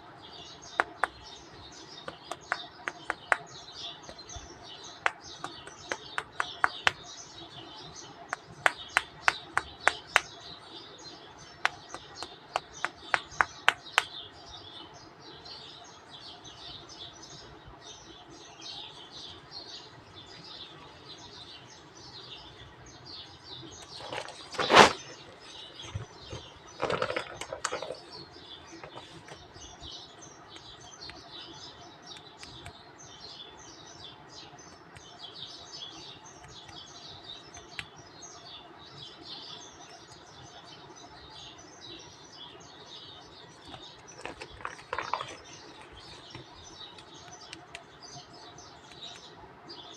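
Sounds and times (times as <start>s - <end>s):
small birds chirping: 0.0s - 49.9s
handling rustle: 23.8s - 29.6s, 43.7s - 47.2s.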